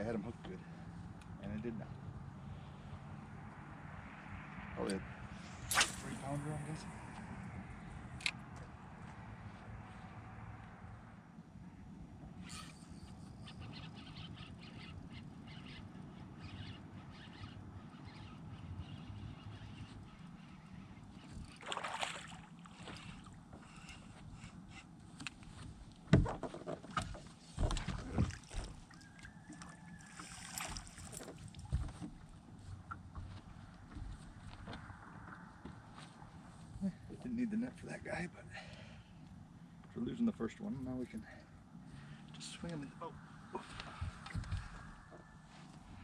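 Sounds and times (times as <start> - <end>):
low steady background: 22.3 - 46.0.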